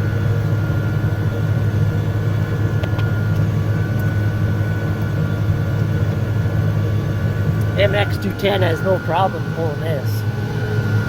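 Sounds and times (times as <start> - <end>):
tractor diesel engine drone: 0.0 - 11.0
faint high whine: 6.9 - 11.0.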